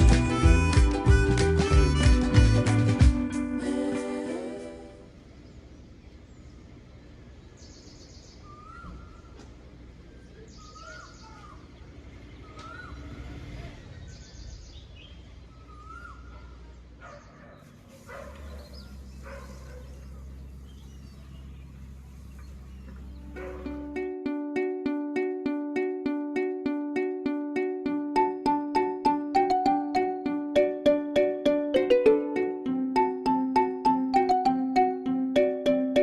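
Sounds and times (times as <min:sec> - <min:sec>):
birds calling: 0:07.6 - 0:09.6, 0:10.2 - 0:13.2, 0:14.0 - 0:16.5, 0:17.1 - 0:23.9.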